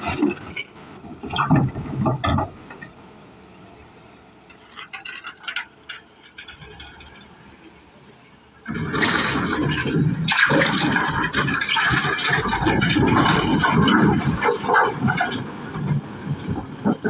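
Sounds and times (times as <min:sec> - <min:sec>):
heavy machinery pushing rocks: 0:00.0 - 0:17.0
rocks scraping and clattering: 0:08.7 - 0:17.0.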